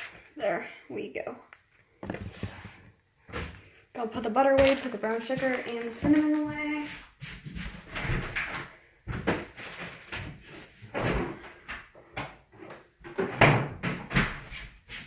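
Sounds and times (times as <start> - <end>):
cupboard doors opening and shutting: 7.6 - 14.7.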